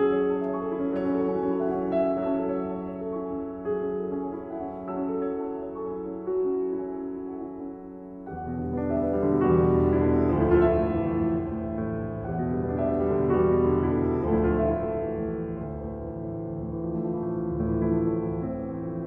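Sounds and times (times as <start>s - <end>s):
piano background music: 0.0s - 19.0s.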